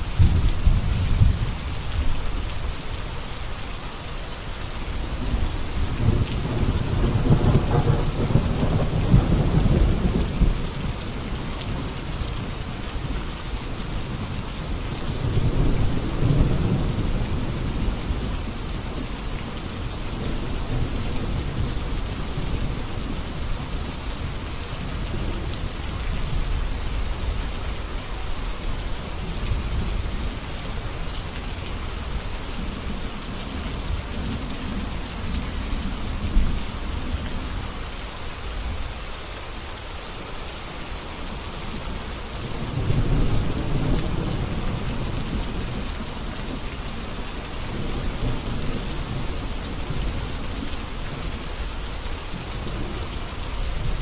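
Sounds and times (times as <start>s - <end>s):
thunder rumbling: 0.0s - 2.0s, 5.2s - 12.0s
heavy rain: 0.0s - 54.0s.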